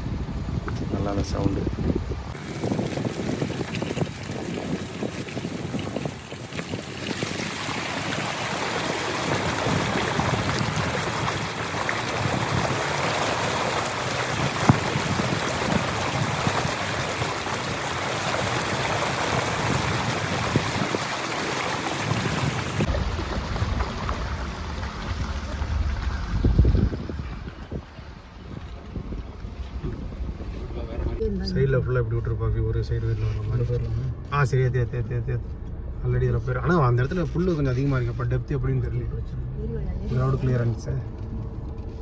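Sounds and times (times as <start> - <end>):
wind buffeting microphone: 0.0 - 31.3
tyres splashing through water: 2.3 - 31.2.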